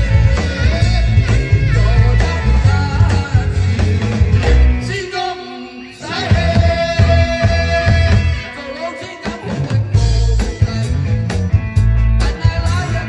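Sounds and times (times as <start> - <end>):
bending lead melody: 0.0 - 13.0
rock band playing: 0.0 - 13.0.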